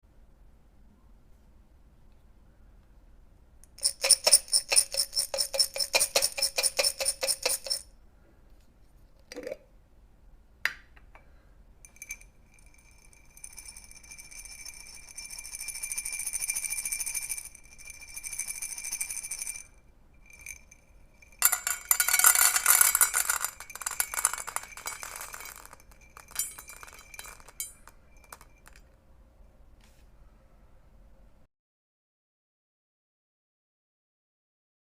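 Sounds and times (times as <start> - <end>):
dry kibble rattling in container: 21.4 - 28.8.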